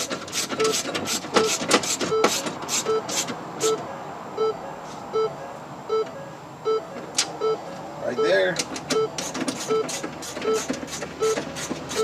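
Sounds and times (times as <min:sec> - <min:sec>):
car warning chime beeping: 0:01.4 - 0:11.4.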